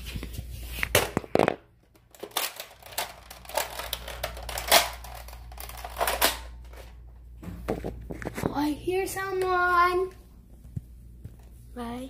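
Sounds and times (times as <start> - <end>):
plastic toy blaster clicks: 2.2 - 6.6.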